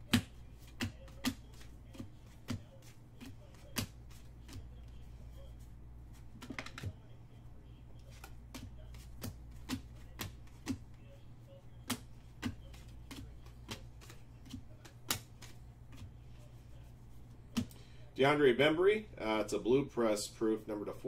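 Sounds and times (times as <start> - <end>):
cards clicking and tapping: 0.0 - 5.1, 6.4 - 7.0, 8.0 - 11.0, 11.8 - 16.5, 17.5 - 17.8.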